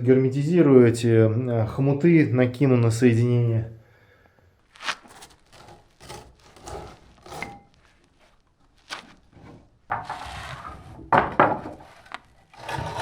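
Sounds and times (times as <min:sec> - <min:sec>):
rubbing and scraping: 0:04.6 - 0:13.0.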